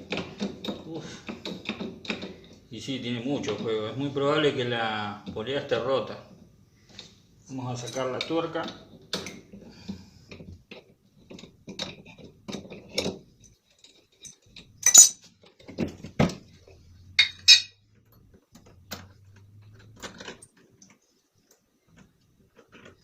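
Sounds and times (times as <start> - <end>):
hand tools clinking on metal: 11.8 - 15.3, 17.0 - 17.8.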